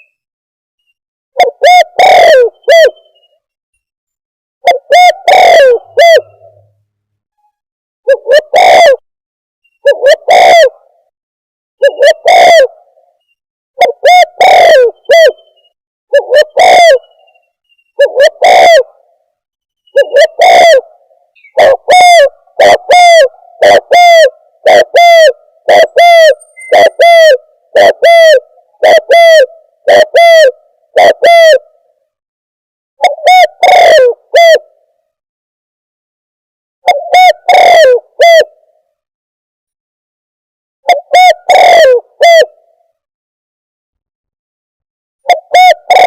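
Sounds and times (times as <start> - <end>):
dove cooing: 1.4 - 3.3, 4.6 - 6.7, 8.1 - 9.0, 9.8 - 11.1, 11.8 - 13.1, 13.8 - 15.5, 16.1 - 17.4, 18.0 - 19.1, 20.0 - 31.8, 33.0 - 34.8, 36.9 - 38.7, 40.9 - 42.7, 45.3 - 46.0.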